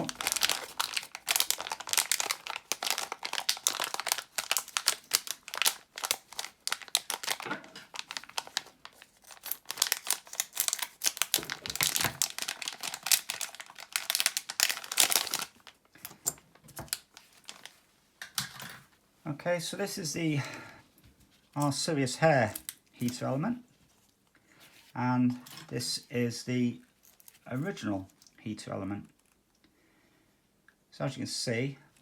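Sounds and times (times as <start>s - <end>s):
packaging crinkling: 0.0s - 17.8s.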